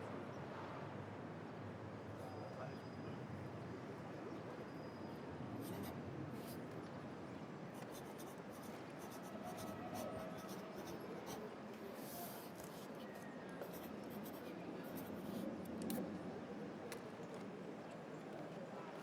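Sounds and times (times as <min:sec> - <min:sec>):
city traffic hum: 0:00.0 - 0:19.0
pencil writing on paper: 0:05.6 - 0:06.6, 0:07.8 - 0:11.4, 0:12.0 - 0:15.6.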